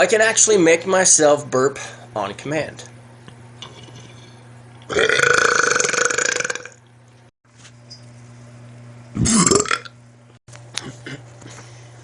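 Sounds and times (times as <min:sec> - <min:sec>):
man burping: 0:04.9 - 0:06.8, 0:09.2 - 0:10.0.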